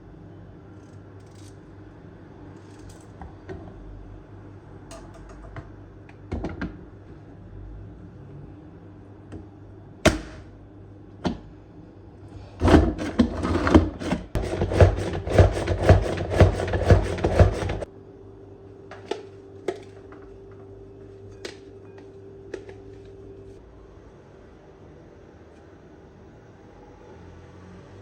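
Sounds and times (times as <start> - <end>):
faint steady hum: 17.8 - 26.9.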